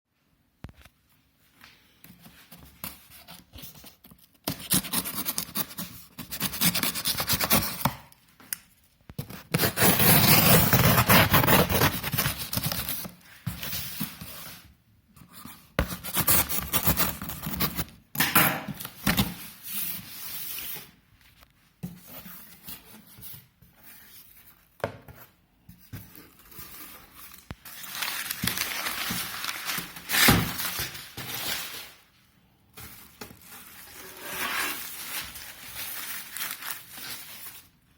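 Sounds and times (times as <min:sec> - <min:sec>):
packaging rubbing and tearing: 0:09.5 - 0:13.1.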